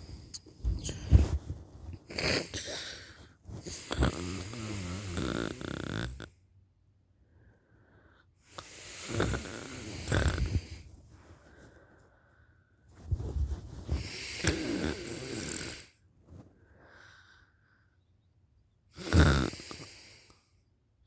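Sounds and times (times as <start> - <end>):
woman snoring: 2.1 - 6.3, 8.6 - 10.8, 14.0 - 15.9, 19.0 - 20.3.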